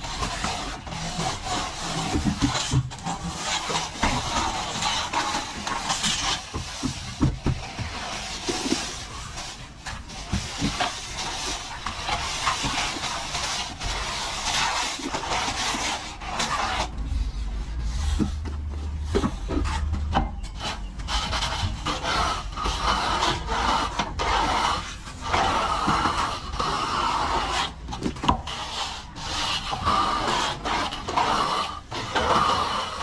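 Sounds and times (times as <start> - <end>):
trowel scraping plaster: 0.0 - 33.0.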